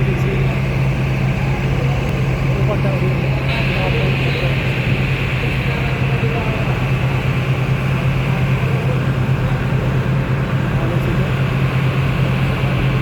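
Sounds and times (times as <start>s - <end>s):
boat engine droning: 0.0s - 13.0s.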